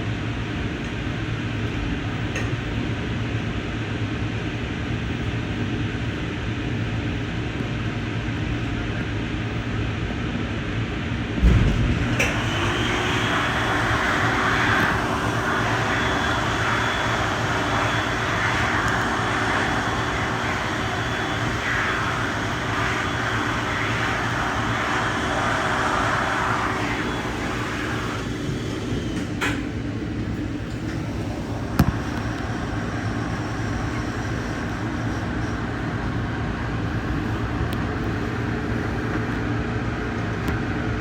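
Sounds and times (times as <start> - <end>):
train wheel and rail noise: 0.0 - 41.0
thump: 11.4 - 12.5.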